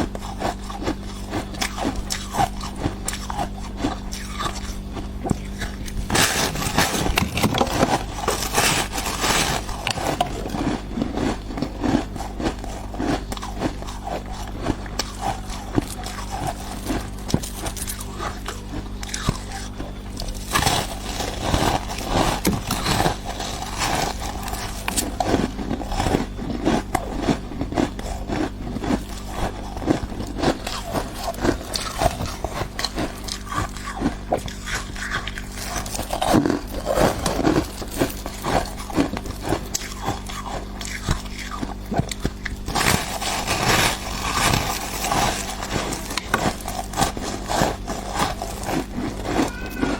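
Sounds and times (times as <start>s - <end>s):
biting and crunching frost ice: 0.0s - 49.9s
ice scraping: 6.0s - 10.7s, 42.7s - 49.9s.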